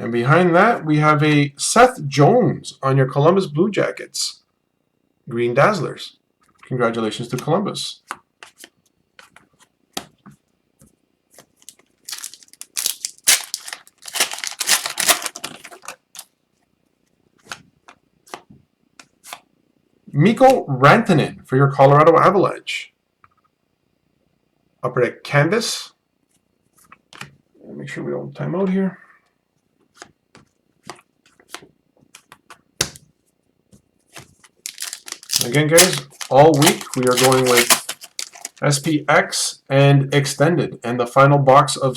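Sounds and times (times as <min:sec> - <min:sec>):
wrapper crinkling and tearing: 0:11.6 - 0:16.3, 0:34.6 - 0:38.9
cards clicking: 0:34.7 - 0:38.6.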